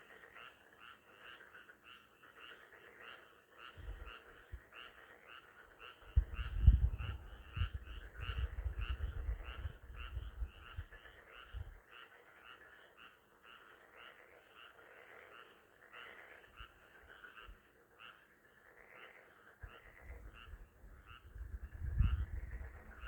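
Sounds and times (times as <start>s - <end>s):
frogs croaking: 0.0s - 23.0s.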